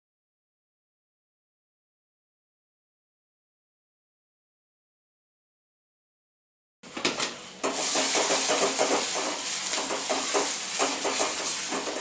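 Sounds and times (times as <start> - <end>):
onions sizzling in hot oil: 7.6 - 12.0
spatula stirring and scraping: 7.7 - 12.0.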